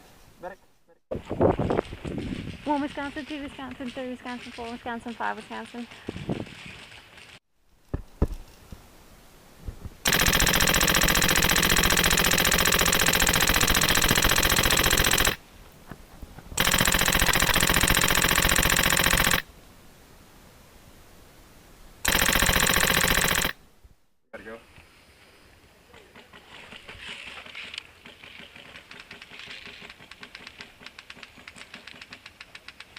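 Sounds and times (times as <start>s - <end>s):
airsoft gun full-auto bursts: 10.0s - 15.4s, 16.6s - 19.5s, 22.0s - 23.6s.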